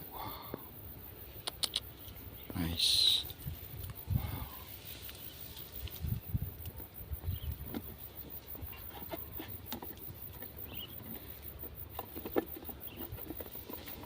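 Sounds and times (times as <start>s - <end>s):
light crackles and rustles: 3.2s - 14.0s.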